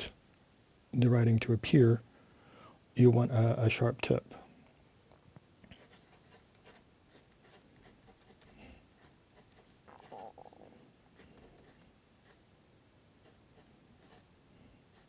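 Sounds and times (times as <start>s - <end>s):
pencil scratching on paper: 5.8s - 10.4s, 11.2s - 12.4s, 13.2s - 15.0s.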